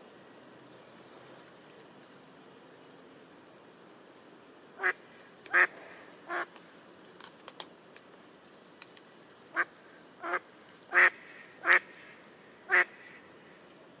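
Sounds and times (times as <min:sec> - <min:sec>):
faint ticks: 0:05.4 - 0:05.6, 0:06.5 - 0:12.5
duck quacking: 0:09.6 - 0:11.9.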